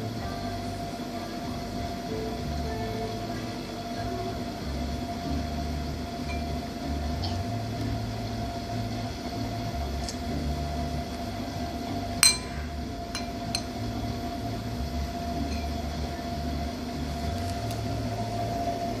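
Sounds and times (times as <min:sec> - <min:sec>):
low rumble and hum: 0:00.0 - 0:19.0
sharp clink: 0:12.2 - 0:13.7.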